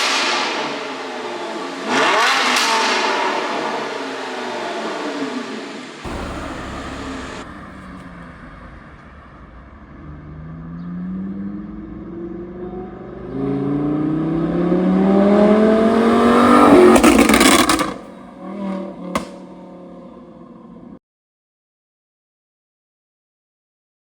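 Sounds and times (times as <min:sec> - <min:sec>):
car engine revving: 0:06.0 - 0:19.4
exhaust crackles and pops: 0:06.1 - 0:09.7
exhaust bang: 0:06.1 - 0:10.7, 0:15.3 - 0:18.2
car engine idling: 0:06.1 - 0:10.8.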